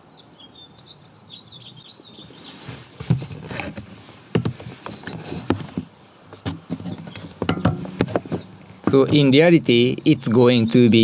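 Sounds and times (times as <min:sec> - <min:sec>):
small bird chirping: 0:00.1 - 0:02.6, 0:06.8 - 0:11.0
knocks and clatter of handling: 0:03.0 - 0:09.4.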